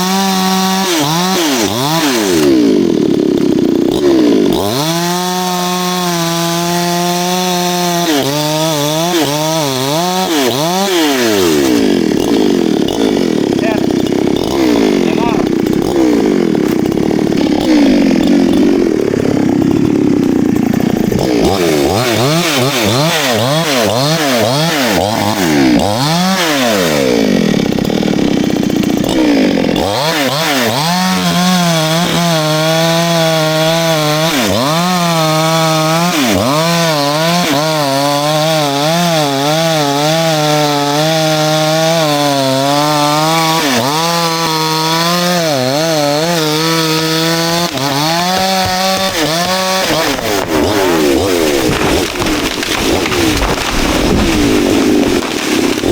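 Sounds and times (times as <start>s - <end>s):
chainsaw cutting wood: 0.0s - 55.9s.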